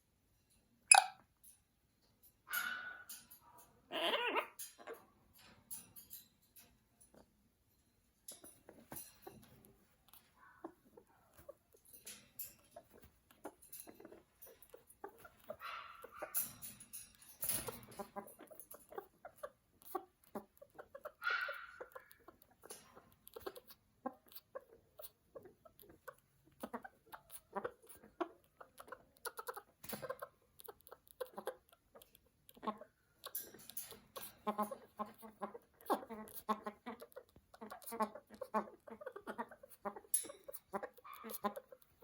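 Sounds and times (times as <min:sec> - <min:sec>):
parrot calls: 0:00.9 - 0:01.2, 0:20.8 - 0:22.5, 0:35.5 - 0:42.0.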